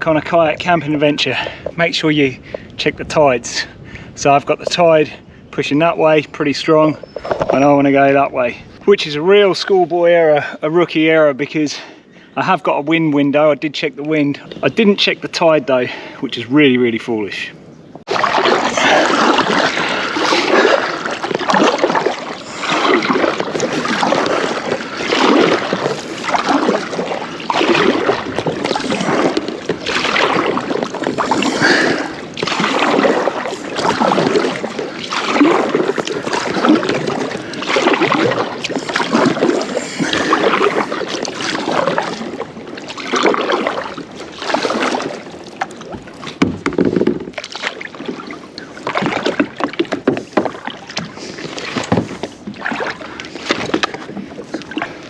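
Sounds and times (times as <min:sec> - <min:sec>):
paddle splashing in water: 0:00.0 - 0:02.7, 0:05.7 - 0:09.8, 0:18.0 - 0:55.0.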